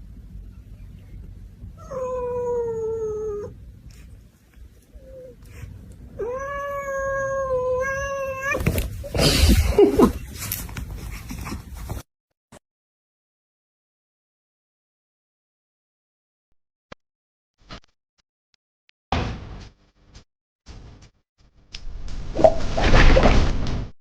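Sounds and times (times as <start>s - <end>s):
cat yowling: 6.2s - 8.7s.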